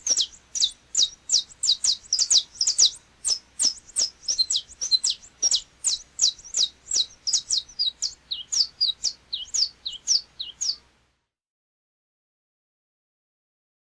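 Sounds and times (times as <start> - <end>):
finch singing high notes: 0.0 - 10.8.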